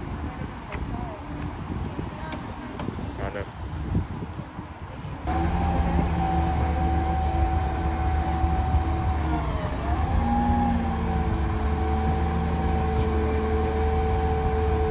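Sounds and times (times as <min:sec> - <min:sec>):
vehicle engine running with whine: 0:05.2 - 0:14.9.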